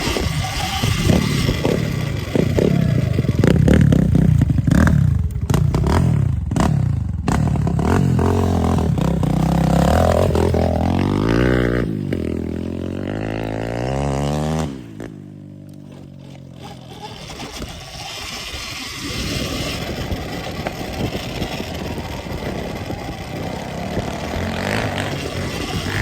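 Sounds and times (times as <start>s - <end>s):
bike clattering over rough ground: 7.3s - 26.0s
electric motor whine: 15.7s - 26.0s.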